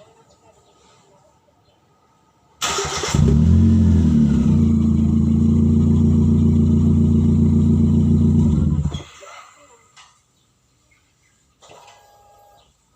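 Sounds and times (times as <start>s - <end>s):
engine with leaking exhaust idling: 3.2s - 9.0s.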